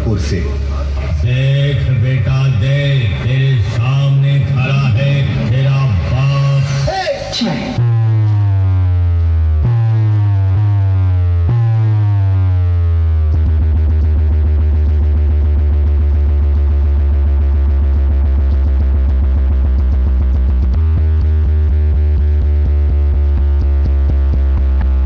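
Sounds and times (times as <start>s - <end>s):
electronic dance music with heavy bass: 0.0s - 25.0s.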